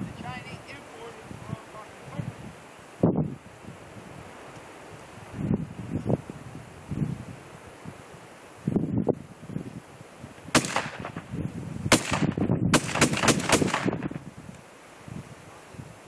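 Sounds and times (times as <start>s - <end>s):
wind buffeting microphone: 0.0s - 16.0s
shotgun shots: 10.5s - 11.3s, 11.9s - 14.2s.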